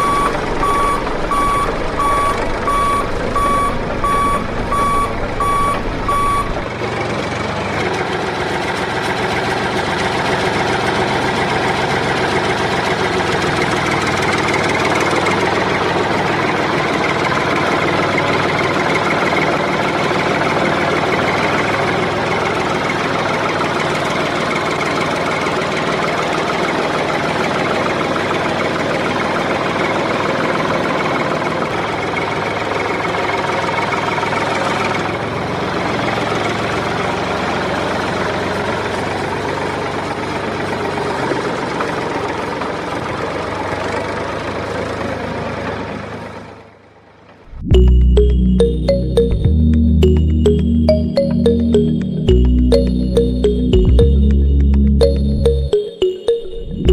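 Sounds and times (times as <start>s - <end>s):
reversing alarm beeping: 0.0s - 6.7s, 47.5s - 56.9s
vehicle engine running: 0.0s - 46.6s.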